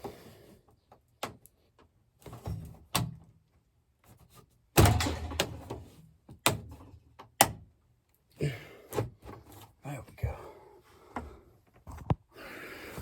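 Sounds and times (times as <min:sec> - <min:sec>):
metal duct knocks and clanks: 0:04.8 - 0:06.9.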